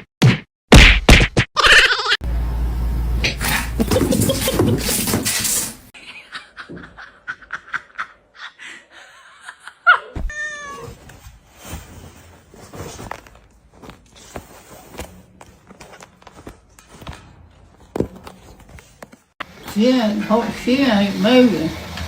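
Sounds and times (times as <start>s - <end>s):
people laughing: 3.4s - 5.3s, 6.0s - 10.2s.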